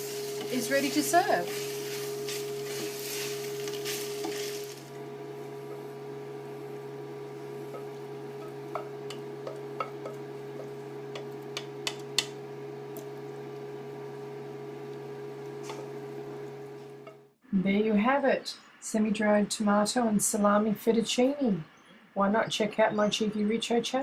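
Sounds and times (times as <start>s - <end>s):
pasta sizzling in a frying pan: 0.0s - 12.4s
steady hum: 0.0s - 21.8s
utensils tapping pan and dishes: 7.7s - 12.4s.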